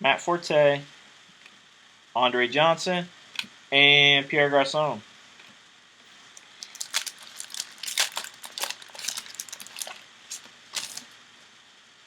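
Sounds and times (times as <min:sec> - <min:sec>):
foil wrapper crinkling and tearing: 0:06.2 - 0:11.2.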